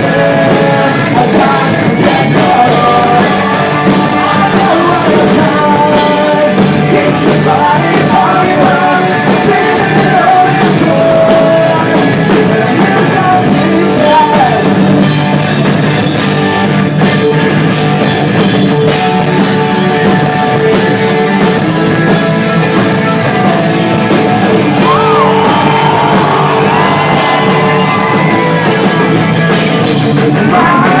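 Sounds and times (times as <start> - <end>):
person singing: 0.0 - 14.8, 30.2 - 31.0
rock band playing live: 0.0 - 31.0.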